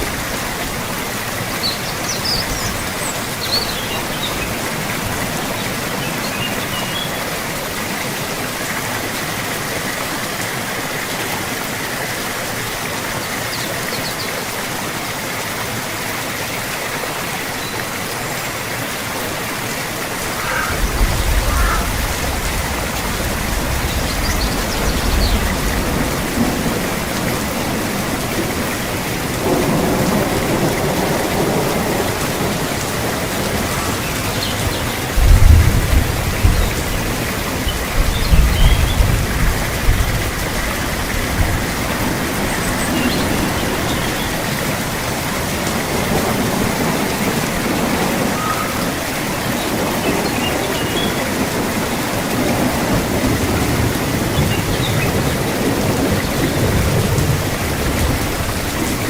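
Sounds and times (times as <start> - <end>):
steady rain hiss: 0.0 - 59.0
low rolling thunder: 20.2 - 50.6, 51.3 - 59.0.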